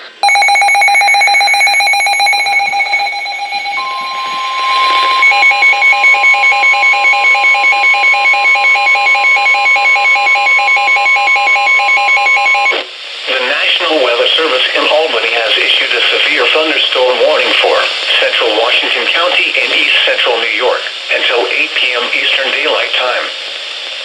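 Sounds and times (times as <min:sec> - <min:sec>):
electronic beeping: 0:00.2 - 0:08.4
steady warning tone: 0:00.2 - 0:12.8.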